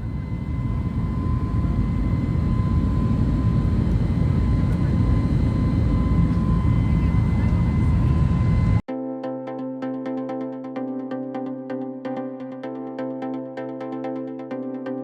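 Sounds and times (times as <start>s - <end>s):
airliner cabin rumble: 0.0s - 8.8s
faint thin whine: 0.0s - 8.8s.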